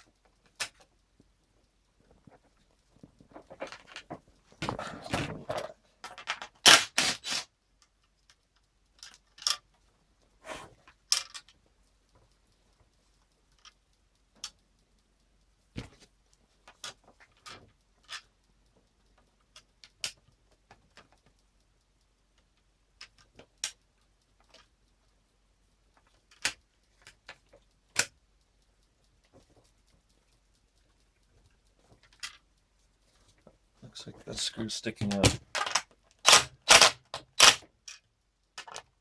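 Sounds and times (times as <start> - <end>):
ski binding plastic clicks: 3.2 - 7.9, 35.0 - 38.0.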